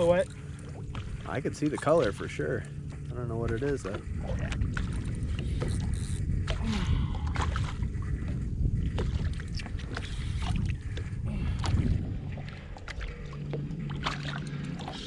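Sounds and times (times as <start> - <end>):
water: 0.0 - 15.0
wind rumble: 0.0 - 15.0.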